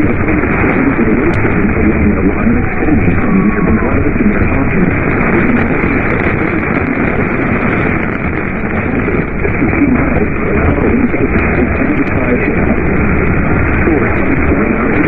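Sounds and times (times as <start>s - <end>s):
faint broadcast voice: 0.0s - 15.0s
radio static: 0.0s - 15.0s.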